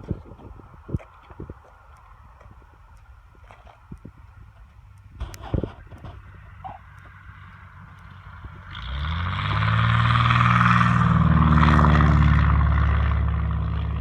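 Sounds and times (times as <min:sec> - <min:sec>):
light aircraft passing low: 0:05.2 - 0:14.0.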